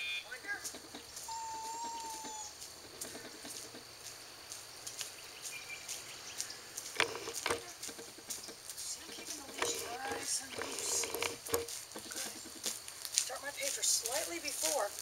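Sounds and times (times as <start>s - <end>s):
footsteps of person and dog: 0.5s - 15.0s
falling whistle-like tone: 1.2s - 2.6s
light clicks and knocks: 2.2s - 3.9s, 6.9s - 12.8s.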